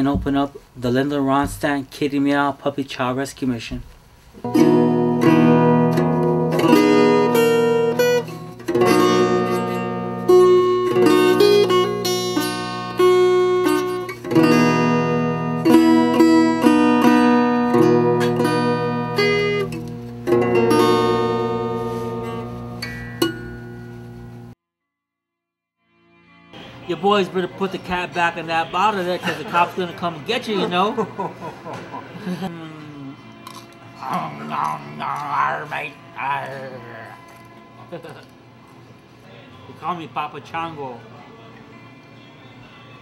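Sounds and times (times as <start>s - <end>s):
acoustic guitar chords: 3.8s - 24.6s.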